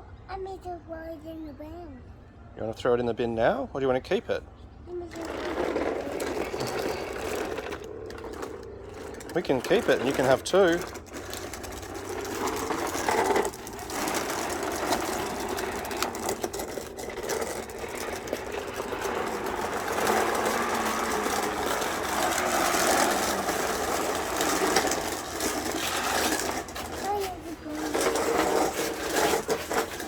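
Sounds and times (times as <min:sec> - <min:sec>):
toy lawn mower whirring: 0:04.9 - 0:30.0.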